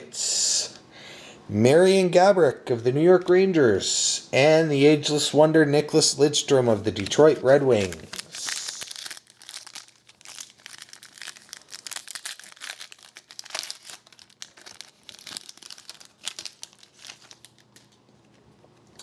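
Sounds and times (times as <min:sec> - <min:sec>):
foil wrapper crinkling and tearing: 0:07.0 - 0:19.0.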